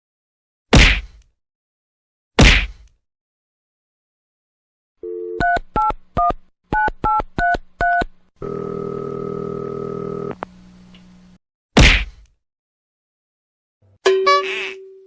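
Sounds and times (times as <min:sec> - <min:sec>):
telephone dial tone: 0:07.8 - 0:10.4.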